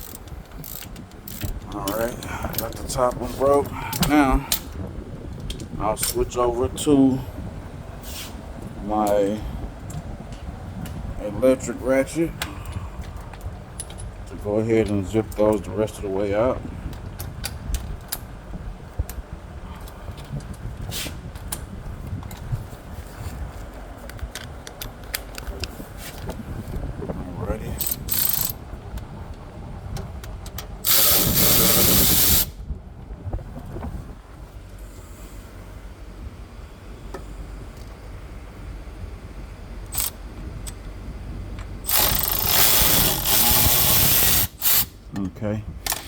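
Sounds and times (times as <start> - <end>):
cordless electric ratchet spinning: 0.0 - 1.6, 27.8 - 28.6, 30.8 - 32.6, 39.9 - 40.2, 41.8 - 45.0
low background rumble: 0.0 - 46.0
metallic clicks of hand tools: 27.8 - 28.6, 39.9 - 40.8, 41.8 - 44.9.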